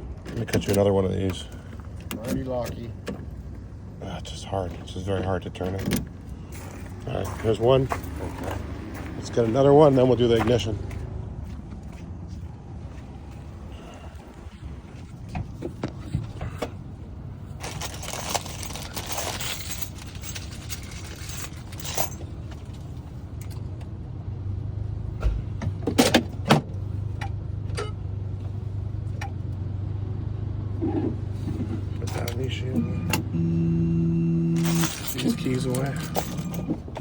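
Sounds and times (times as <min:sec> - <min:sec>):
keys clinking: 0:17.6 - 0:22.4, 0:34.5 - 0:36.9.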